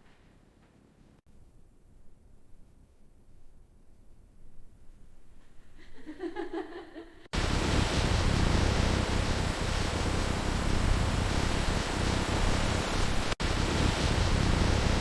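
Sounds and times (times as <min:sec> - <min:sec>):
factory machinery rushing noise: 0:07.4 - 0:15.0.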